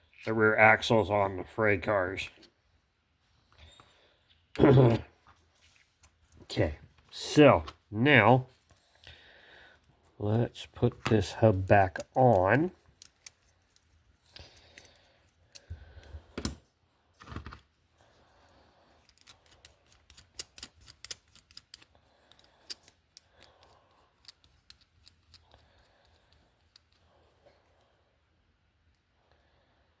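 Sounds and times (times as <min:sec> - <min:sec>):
small parts clicking and ticking: 0:11.9 - 0:16.1, 0:19.0 - 0:27.1.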